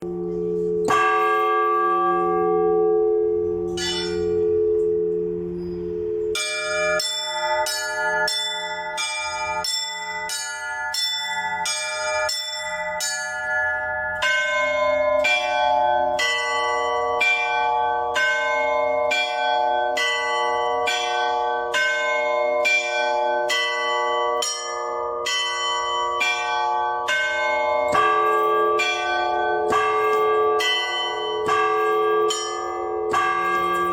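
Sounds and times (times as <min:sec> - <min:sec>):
large church bell humming: 0:00.0 - 0:33.9
small bells chiming fast: 0:03.5 - 0:33.9.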